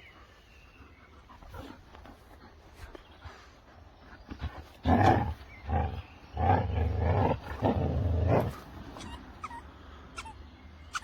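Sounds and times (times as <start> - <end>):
dog growling: 4.8 - 8.7.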